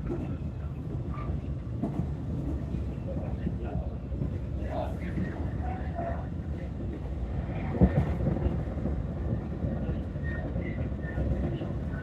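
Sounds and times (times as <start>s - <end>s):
train low rumble: 0.0s - 12.0s.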